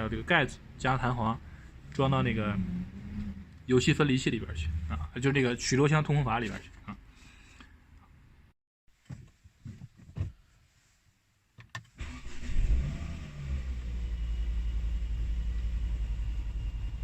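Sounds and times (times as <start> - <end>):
car engine starting and idling: 12.0 - 17.0.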